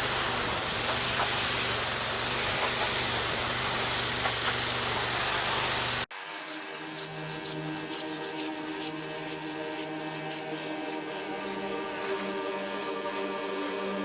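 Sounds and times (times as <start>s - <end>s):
pressure washer engine hum: 0.0s - 6.1s
water jet hissing on boards: 0.0s - 6.1s.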